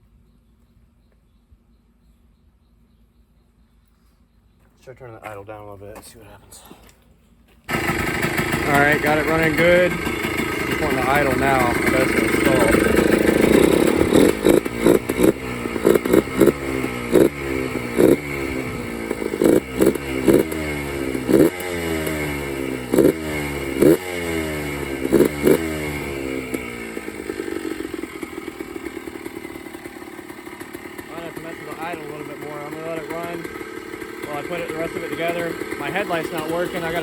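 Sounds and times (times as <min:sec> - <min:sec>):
two-stroke engine revving: 0:07.7 - 0:37.0.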